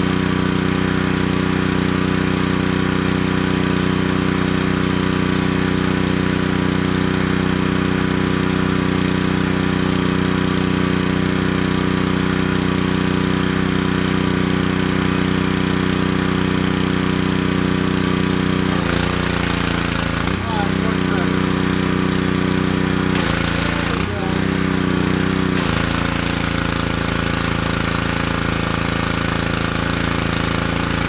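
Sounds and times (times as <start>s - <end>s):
pressure washer engine running: 0.0s - 31.0s.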